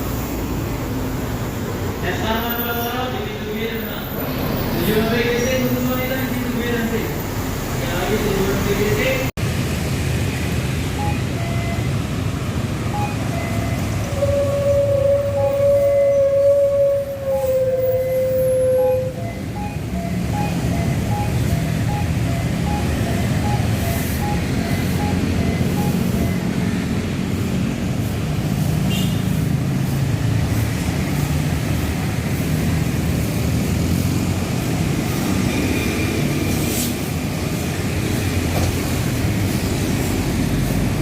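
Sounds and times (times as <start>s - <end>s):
bus engine rumble: 0.0s - 41.0s
short electronic beeps: 10.9s - 12.1s, 12.8s - 14.1s, 18.8s - 26.8s.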